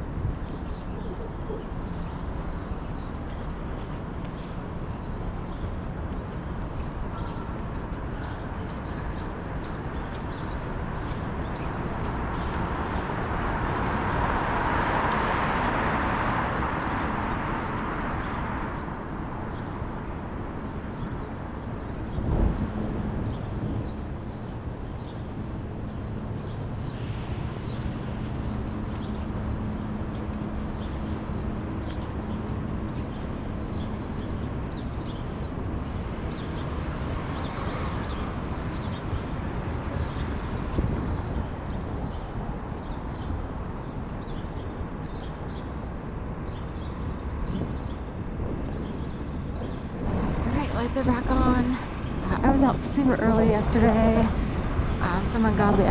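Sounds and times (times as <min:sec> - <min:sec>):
street noise: 0:00.0 - 0:55.9
wind rumbling on microphone: 0:00.0 - 0:55.9
walking footsteps: 0:00.2 - 0:14.2, 0:27.8 - 0:36.8
small birds chirping: 0:00.2 - 0:15.0, 0:16.4 - 0:55.9.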